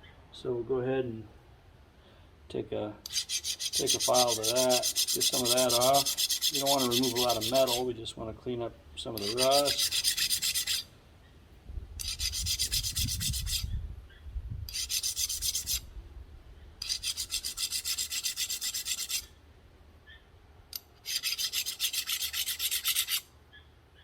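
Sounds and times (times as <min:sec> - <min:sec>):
hand file rasping on steel: 0:03.1 - 0:07.9, 0:09.2 - 0:10.9, 0:12.0 - 0:13.7, 0:14.7 - 0:15.8, 0:16.8 - 0:19.3, 0:21.0 - 0:23.2.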